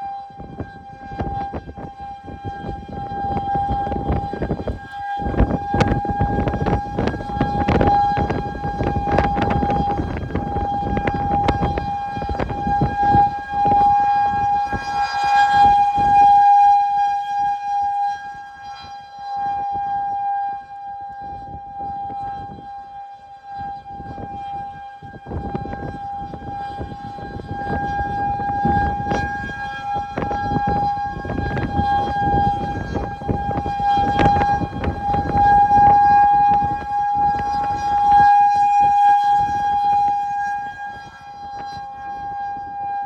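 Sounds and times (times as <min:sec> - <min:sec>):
low rumbling noise: 0:03.7 - 0:15.0, 0:27.3 - 0:38.2
door warning alarm tone: 0:31.2 - 0:35.9.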